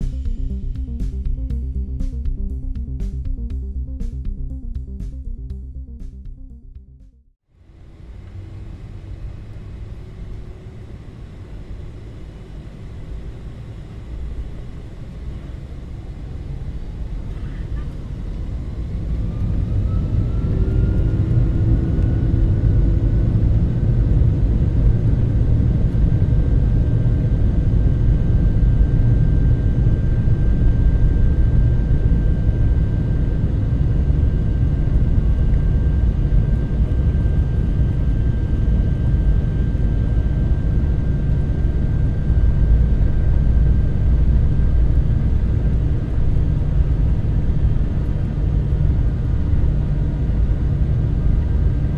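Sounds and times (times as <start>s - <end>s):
jet engine whine: 7.6s - 51.9s.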